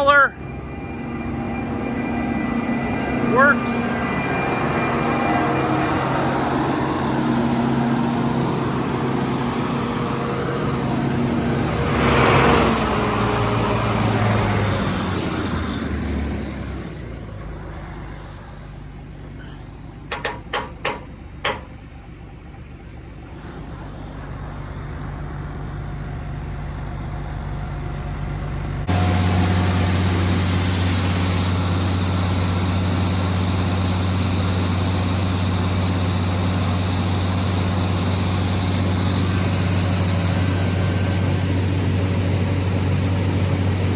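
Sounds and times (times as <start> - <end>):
falling whine: 0.0 - 19.6, 28.6 - 43.9
heavy machinery engine: 0.0 - 43.9.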